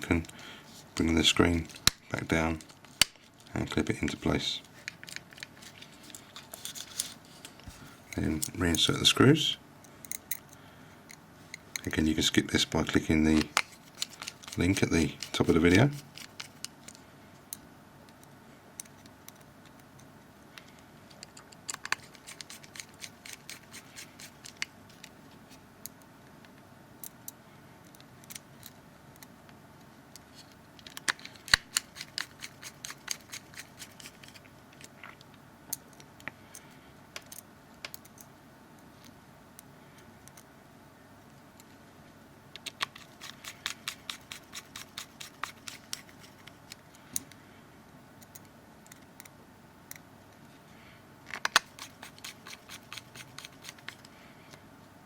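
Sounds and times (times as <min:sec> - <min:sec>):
small screwdriver clicking and scratching: 0:13.3 - 0:17.0, 0:21.2 - 0:25.2, 0:30.8 - 0:34.9, 0:42.6 - 0:47.3, 0:51.4 - 0:54.1.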